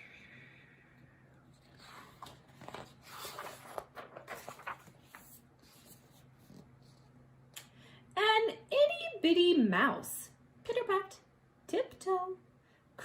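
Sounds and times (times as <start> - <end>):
paper rustling of pages turning: 1.5 - 7.2.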